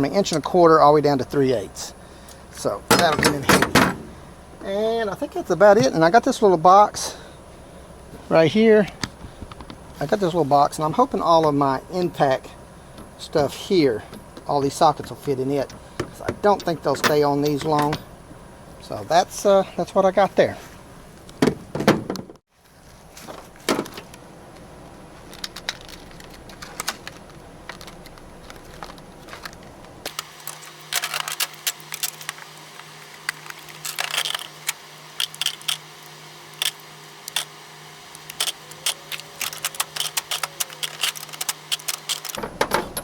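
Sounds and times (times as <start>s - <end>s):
metal sockets clinking: 2.9s - 4.4s, 14.1s - 18.5s.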